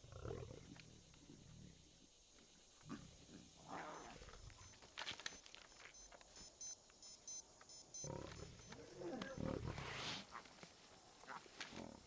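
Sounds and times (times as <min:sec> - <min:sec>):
high-pitched electronic beeping: 0:04.0 - 0:09.4.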